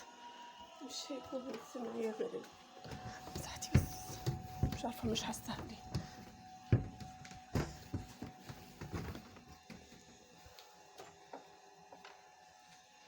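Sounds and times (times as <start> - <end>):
knocks and thuds: 3.4 - 9.3.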